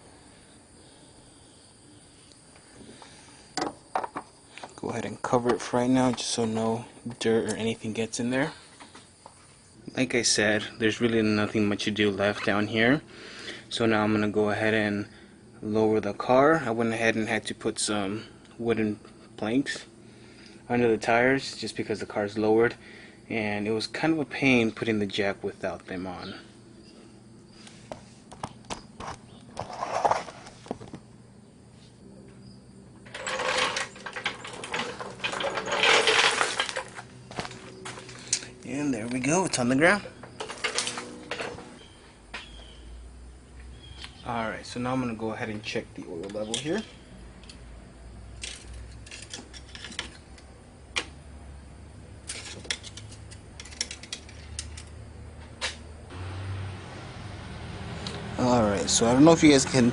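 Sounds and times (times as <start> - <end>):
metallic rattling and scraping: 33.0 - 41.9, 48.4 - 50.5, 52.2 - 54.9.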